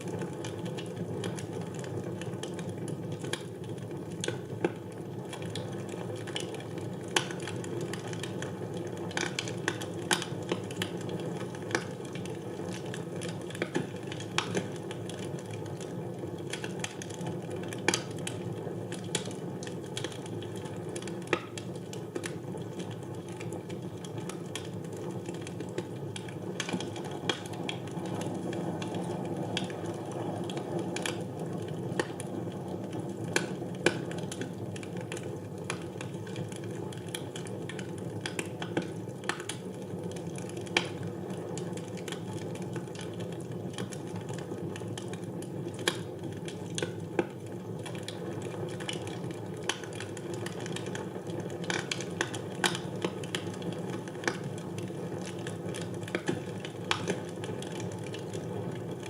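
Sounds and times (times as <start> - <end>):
fire crackling and popping: 0.0 - 59.0
flames rushing: 13.9 - 59.0.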